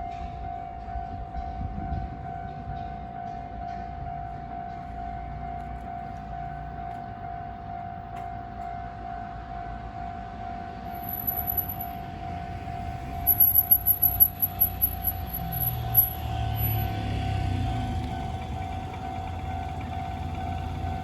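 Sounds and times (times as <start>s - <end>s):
level-crossing warning alarm ringing: 2.1s - 21.0s
high rapidly pulsing squeal: 10.9s - 12.0s, 13.0s - 17.2s.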